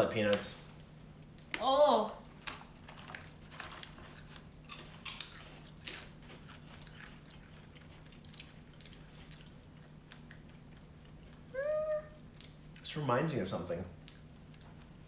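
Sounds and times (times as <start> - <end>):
popcorn chewing crunches: 3.1 - 11.5.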